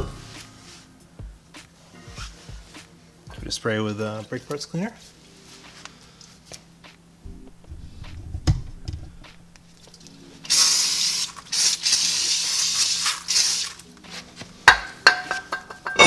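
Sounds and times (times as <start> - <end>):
aerosol spray hissing: 10.4 - 13.9
metallic clank ringing: 14.7 - 16.0.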